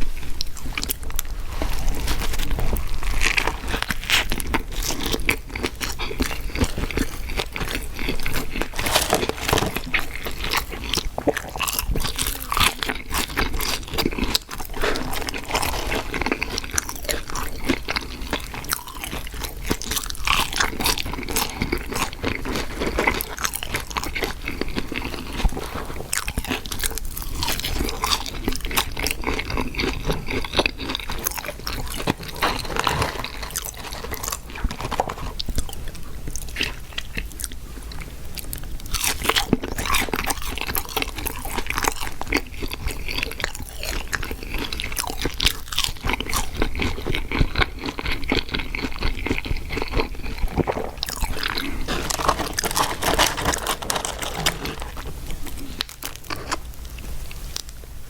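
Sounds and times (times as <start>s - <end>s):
person crunching and chewing food: 0.0s - 57.8s.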